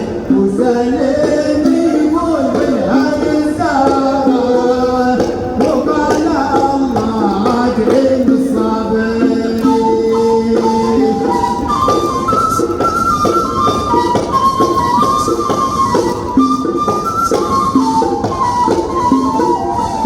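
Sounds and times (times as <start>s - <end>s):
person singing: 0.0s - 11.8s
instrumental accompaniment: 0.0s - 20.0s.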